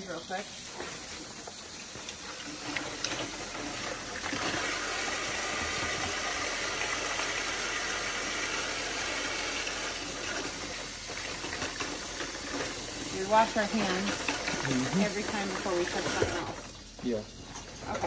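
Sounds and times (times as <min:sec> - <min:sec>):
kitchen tap running: 0:00.0 - 0:18.0.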